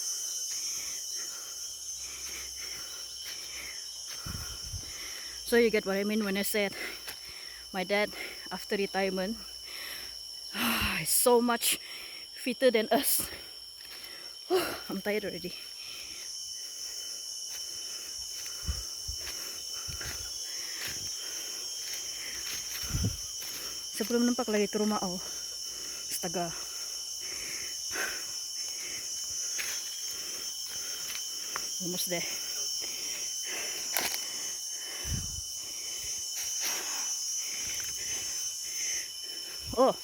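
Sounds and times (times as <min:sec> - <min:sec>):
footsteps on a trail: 0:00.0 - 0:05.4, 0:06.2 - 0:07.5, 0:13.2 - 0:40.0
heavy breathing: 0:00.0 - 0:05.4, 0:25.2 - 0:40.0
insects droning: 0:00.0 - 0:40.0.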